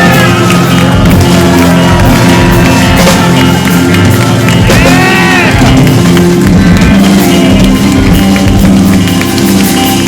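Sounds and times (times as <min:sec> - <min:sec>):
high sliding guitar notes: 0:00.0 - 0:08.4
crowd cheering and shouting: 0:00.0 - 0:10.0
live rock band: 0:00.0 - 0:10.0.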